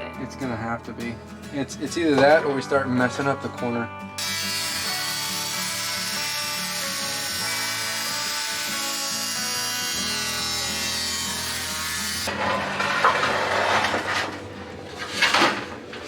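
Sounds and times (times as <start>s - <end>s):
background music: 0.0s - 13.0s
hand tool shaving wood: 4.9s - 16.0s.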